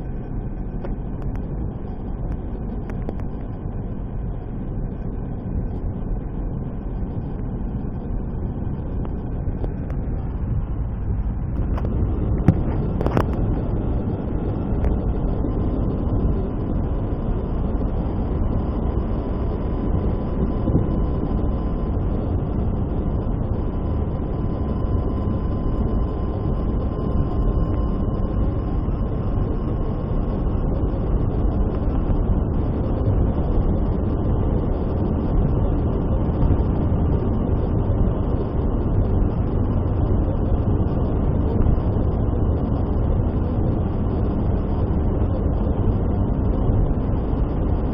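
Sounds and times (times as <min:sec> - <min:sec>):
car driving on highway: 0:00.0 - 0:47.9
faint thin whine: 0:00.0 - 0:47.9.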